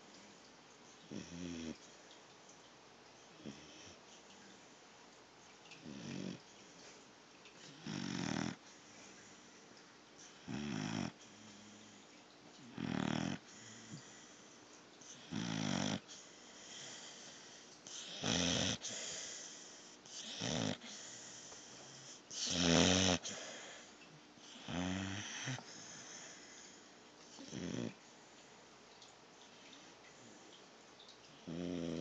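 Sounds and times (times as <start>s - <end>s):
puppy snoring: 1.1s - 1.8s, 3.4s - 4.0s, 5.8s - 6.4s, 7.7s - 8.7s, 10.2s - 12.0s, 12.7s - 14.3s, 15.0s - 28.0s, 31.3s - 32.0s.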